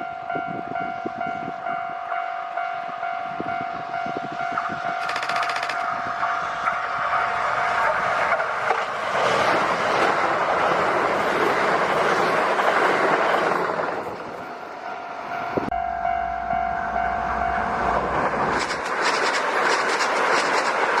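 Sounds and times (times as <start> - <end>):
level crossing warning bell: 0.0 - 7.8, 14.7 - 18.3
electric train passing: 0.0 - 21.0.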